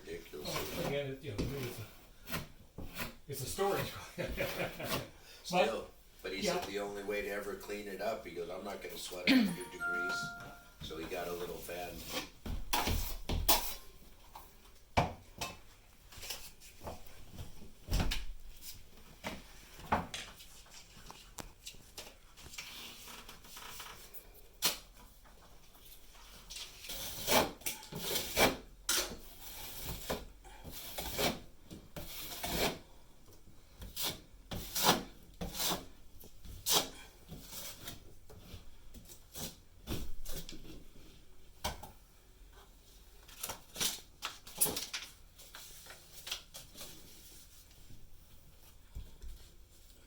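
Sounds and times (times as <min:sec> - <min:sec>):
hand tool scraping a hard surface: 0:01.6 - 0:05.2, 0:26.9 - 0:32.9, 0:33.8 - 0:38.0.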